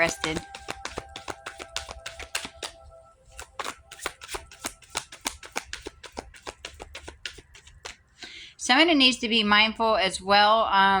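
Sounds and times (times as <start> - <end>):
cards being shuffled: 0.0 - 8.2.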